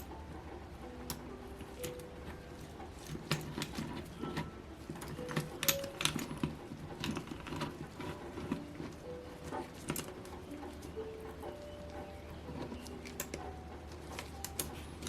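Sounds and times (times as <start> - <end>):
hand tools clicking and tapping: 0.0 - 15.0.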